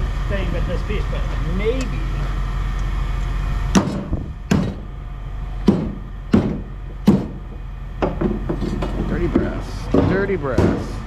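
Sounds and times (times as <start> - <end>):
scrap metal clanking: 8.1 - 11.0.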